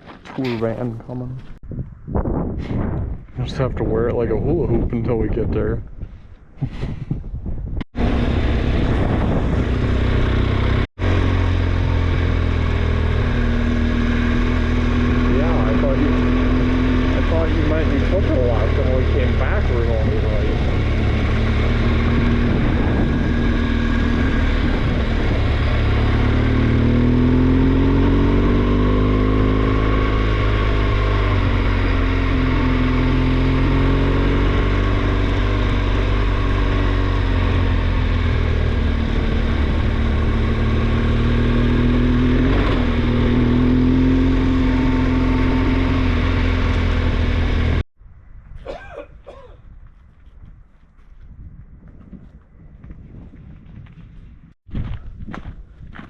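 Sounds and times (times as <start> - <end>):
wind rush: 1.4 - 10.9, 16.5 - 31.8, 49.6 - 56.0
motorcycle engine running: 8.0 - 47.8.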